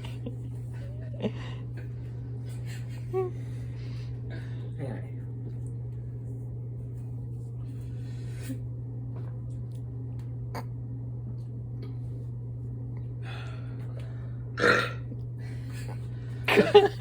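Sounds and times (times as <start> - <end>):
steady low hum: 0.0 - 17.0
short burp: 14.6 - 15.1.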